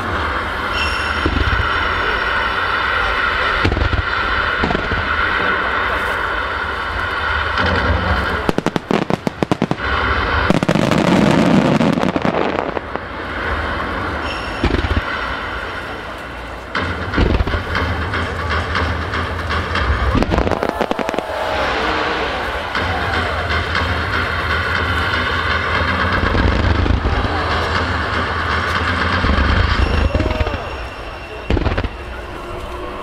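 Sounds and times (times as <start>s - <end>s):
rapid fireworks crackling: 0.0s - 33.0s
fireworks shells bursting: 0.2s - 33.0s.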